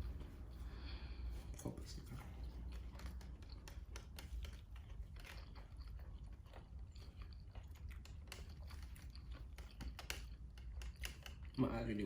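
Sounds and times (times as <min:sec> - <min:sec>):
low steady hum: 0:00.0 - 0:12.0
person chewing crunchy food: 0:02.2 - 0:11.6.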